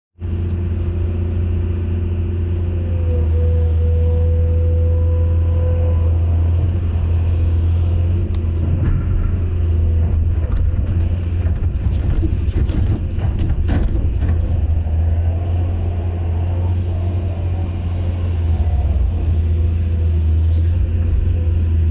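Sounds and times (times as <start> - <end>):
excavator diesel engine running: 0.2 - 21.9
metal clanks and knocks: 8.3 - 15.6.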